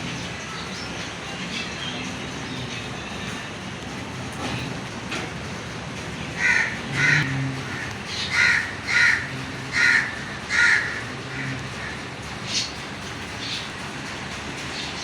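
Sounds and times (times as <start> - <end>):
crow cawing: 6.4 - 12.0.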